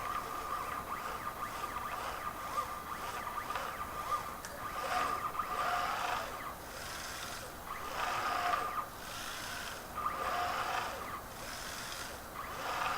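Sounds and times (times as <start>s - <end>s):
stepper motors whining: 0.0s - 12.9s.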